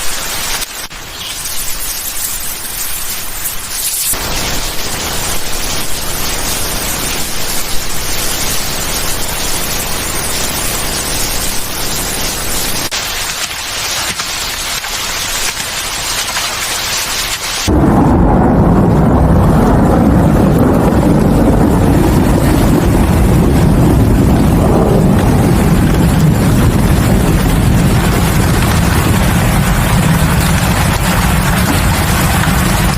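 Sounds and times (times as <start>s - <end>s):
rain hissing: 0.0s - 32.9s
deep steady rumble: 17.7s - 32.9s.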